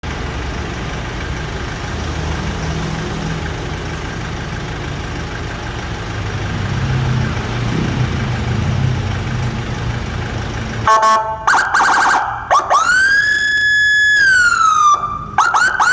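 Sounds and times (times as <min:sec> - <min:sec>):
pickup engine idling: 0:03.4 - 0:15.9.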